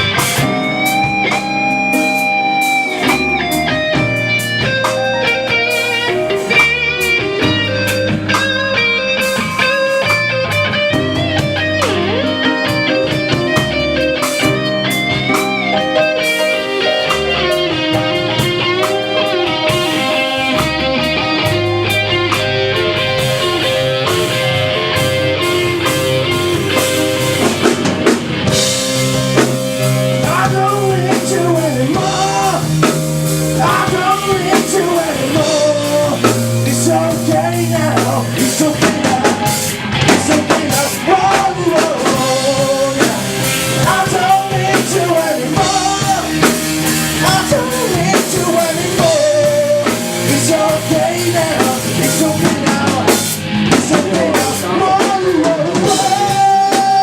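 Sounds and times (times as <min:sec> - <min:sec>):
live rock band playing: 0:00.0 - 0:57.0
person singing: 0:30.1 - 0:57.0.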